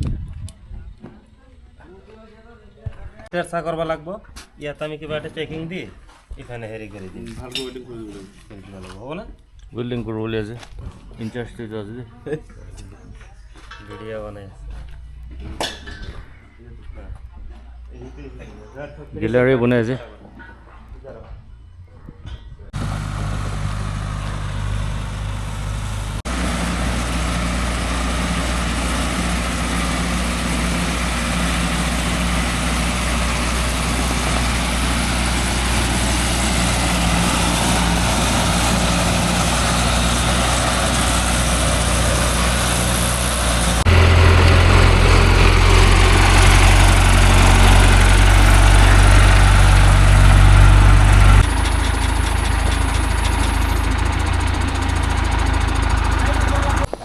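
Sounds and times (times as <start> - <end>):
heavy engine running: 22.6 - 57.0.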